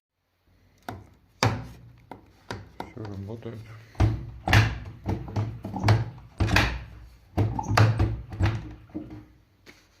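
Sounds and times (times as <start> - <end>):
plastic door clunks and latch clicks: 4.0 - 9.2.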